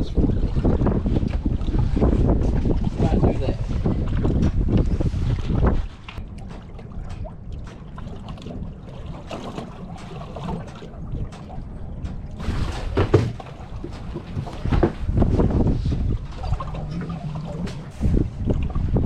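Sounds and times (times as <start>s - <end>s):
wind rumbling on microphone: 0.0s - 19.0s
knocks and handling noises: 9.4s - 15.6s.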